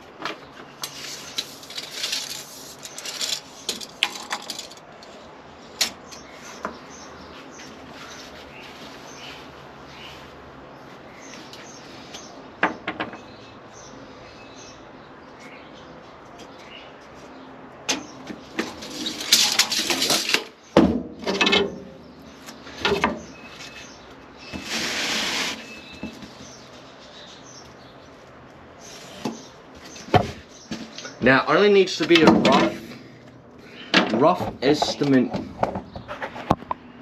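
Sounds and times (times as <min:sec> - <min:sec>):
scraping: 0:22.7 - 0:26.6.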